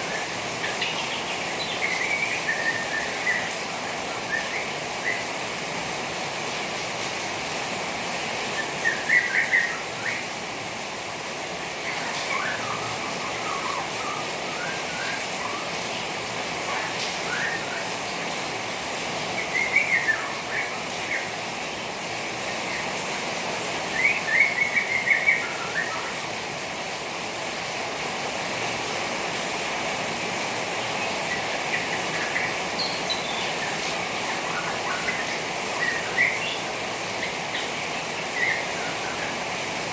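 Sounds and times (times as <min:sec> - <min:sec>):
bird twittering: 0:00.0 - 0:05.3, 0:08.6 - 0:10.3, 0:11.8 - 0:18.0, 0:19.4 - 0:21.4, 0:30.8 - 0:39.5
rain water splashing: 0:00.0 - 0:39.9.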